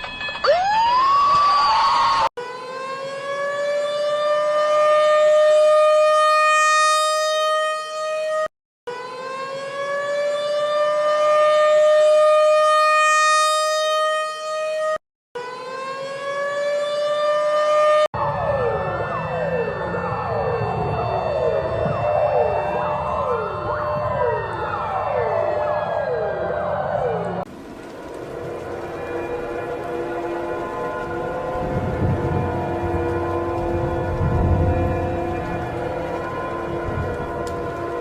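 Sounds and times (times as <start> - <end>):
civil defense siren steady tone: 0.0 - 38.0
several sirens wailing: 0.0 - 38.0.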